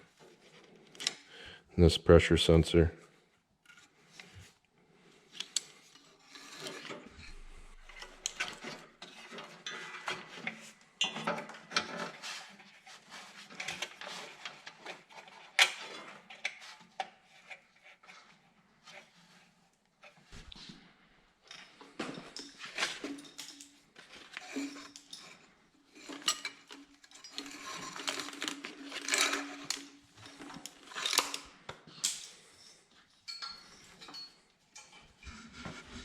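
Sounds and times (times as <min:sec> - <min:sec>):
metallic tool clicks and scraping: 0:22.3 - 0:35.3.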